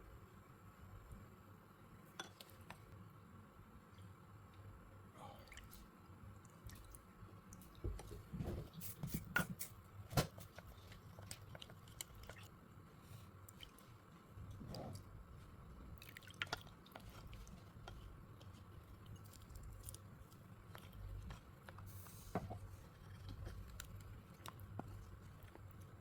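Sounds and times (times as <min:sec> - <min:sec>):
wet chewing: 0:10.6 - 0:12.6, 0:16.0 - 0:21.9.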